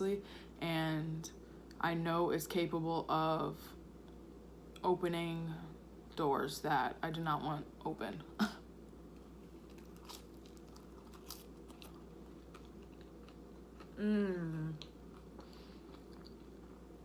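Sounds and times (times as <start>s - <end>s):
person chewing chips: 9.2s - 17.0s
person humming: 14.0s - 14.9s.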